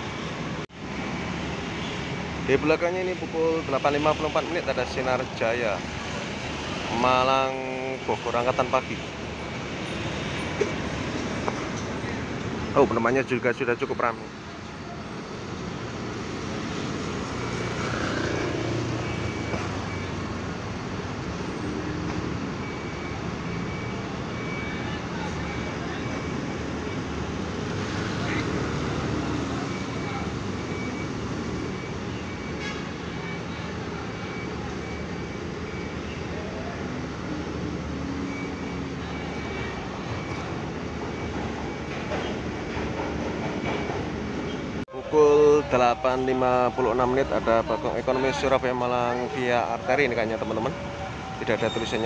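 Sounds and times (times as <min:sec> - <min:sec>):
bus engines running: 0:00.0 - 0:52.0
traffic noise: 0:00.0 - 0:52.0.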